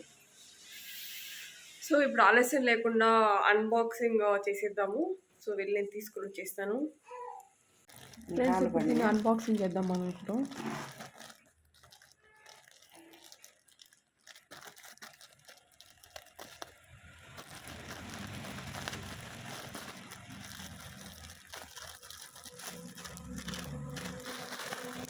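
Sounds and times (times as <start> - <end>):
plastic packaging crinkling: 7.8 - 25.0.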